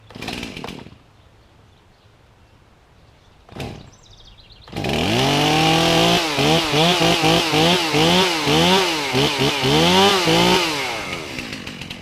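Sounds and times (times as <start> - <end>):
chainsaw starting and running: 0.0 - 1.0, 4.7 - 12.0.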